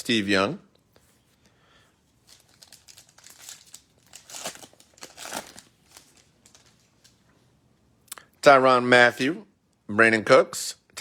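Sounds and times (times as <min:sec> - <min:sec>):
card packs crinkling and rustling: 0:02.2 - 0:07.2.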